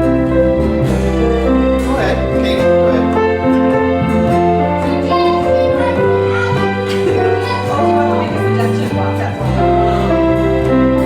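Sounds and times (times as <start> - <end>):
instrumental music with held notes: 0.0 - 11.0.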